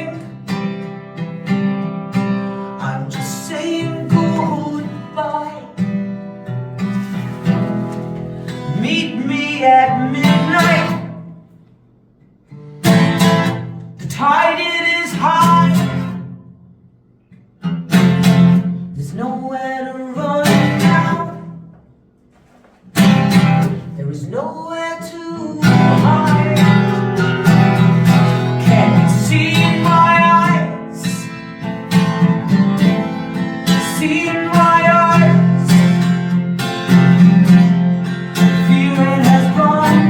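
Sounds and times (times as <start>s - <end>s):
acoustic guitar strumming: 0.0s - 40.0s
person singing: 2.8s - 5.8s, 8.7s - 11.2s, 24.0s - 27.1s, 28.6s - 31.3s, 33.7s - 35.8s, 38.5s - 40.0s.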